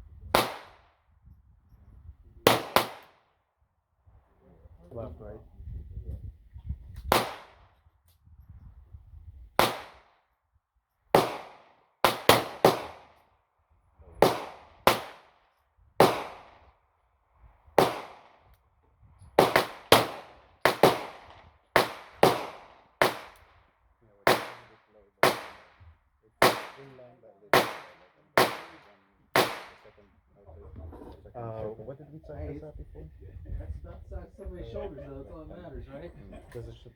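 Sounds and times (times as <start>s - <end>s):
gunshots with echo: 2.5s - 3.1s, 11.2s - 13.0s, 14.2s - 15.2s, 19.4s - 23.4s, 24.3s - 25.7s, 26.4s - 26.9s, 27.5s - 29.8s.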